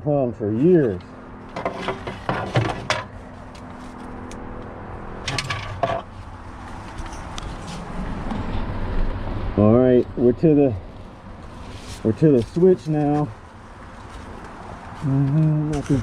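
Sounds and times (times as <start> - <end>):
hand tools clicking and clattering: 1.5 - 3.8, 5.2 - 6.1.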